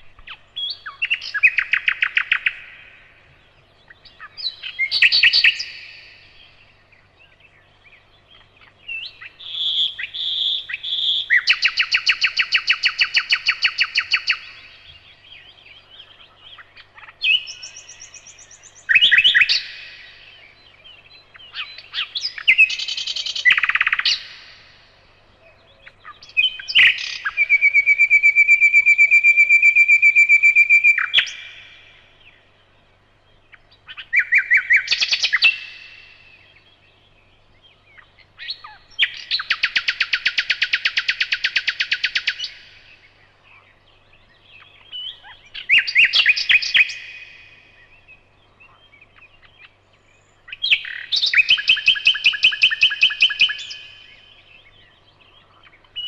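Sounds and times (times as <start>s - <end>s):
nightingale singing: 0.0s - 56.0s.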